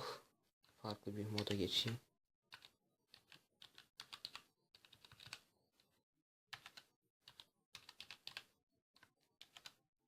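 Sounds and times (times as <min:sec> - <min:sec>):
mechanical keyboard keystrokes: 0:01.4 - 0:05.4, 0:06.5 - 0:09.8.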